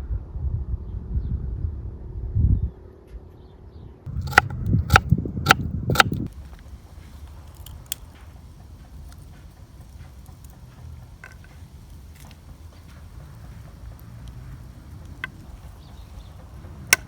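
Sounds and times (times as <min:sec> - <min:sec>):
low rumble: 0:04.0 - 0:17.0
sharp knocks: 0:04.1 - 0:17.0.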